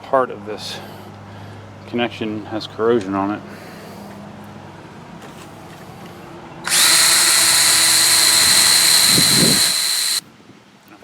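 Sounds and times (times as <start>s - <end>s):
power tool whining: 6.6s - 10.2s.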